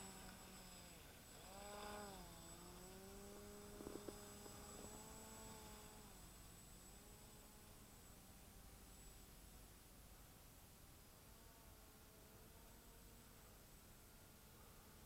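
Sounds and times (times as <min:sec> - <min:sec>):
distant engine drone: 0:00.0 - 0:09.6.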